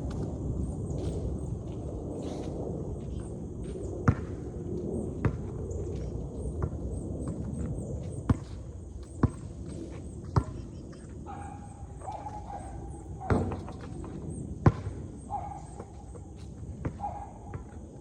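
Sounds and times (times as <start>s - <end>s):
basketball bouncing: 13.2s - 13.9s, 14.6s - 14.9s.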